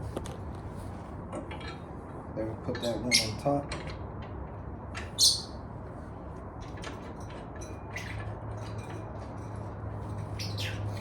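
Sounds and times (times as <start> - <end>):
birds chirping and squawking: 2.8 - 3.5, 5.0 - 5.6, 10.0 - 11.0.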